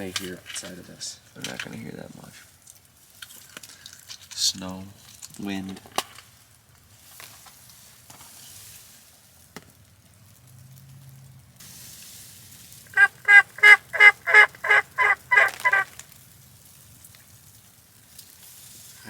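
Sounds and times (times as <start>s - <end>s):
turkey call hen yelps: 12.9s - 16.0s.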